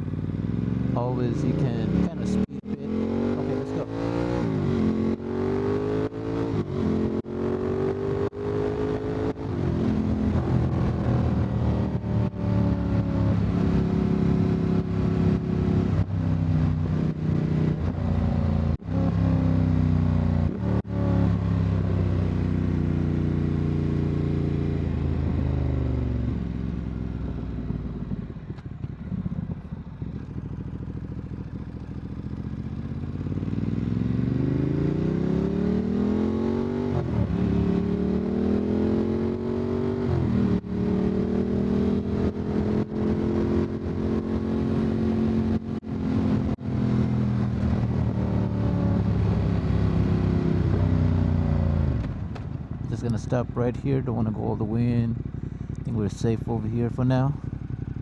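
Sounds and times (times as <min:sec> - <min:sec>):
motorcycle engine riding: 0:00.0 - 0:58.0.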